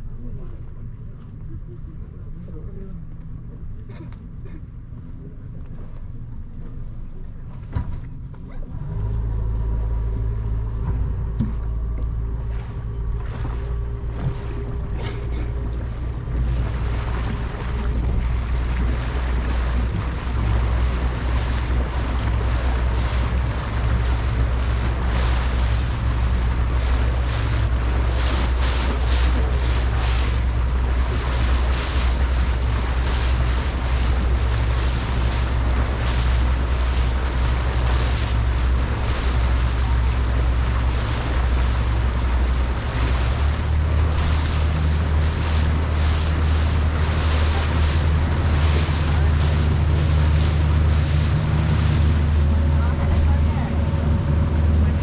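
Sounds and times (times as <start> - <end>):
motorboat engine drone: 0.0 - 55.0
rushing water: 7.6 - 55.0
wind buffeting microphone: 10.4 - 55.0.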